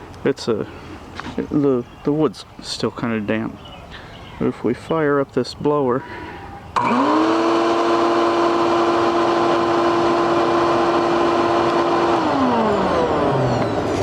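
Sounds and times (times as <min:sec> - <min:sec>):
vacuum motor whine: 0:06.8 - 0:14.0.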